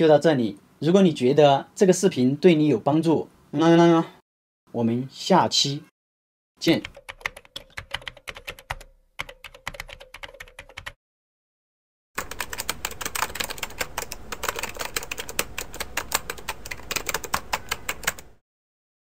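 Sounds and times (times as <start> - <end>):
rapid typing on keys: 6.7 - 11.0, 12.2 - 18.4.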